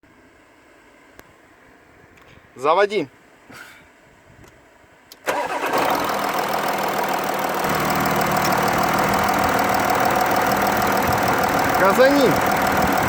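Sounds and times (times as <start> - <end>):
car engine starting and idling: 5.1 - 13.0.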